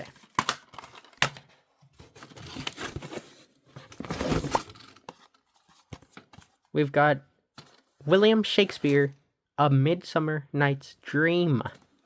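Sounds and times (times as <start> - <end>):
plastic cases rustling and scraping: 0.0 - 6.7, 7.6 - 8.1.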